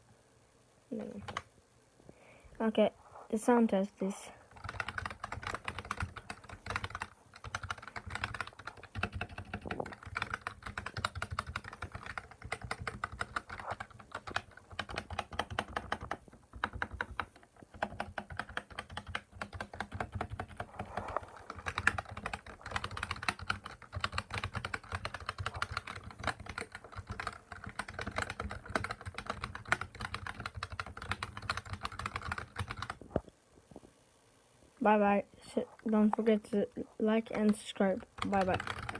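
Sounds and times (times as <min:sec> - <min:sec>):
fast keyboard typing: 0:00.9 - 0:01.5, 0:04.5 - 0:33.1, 0:37.3 - 0:38.9.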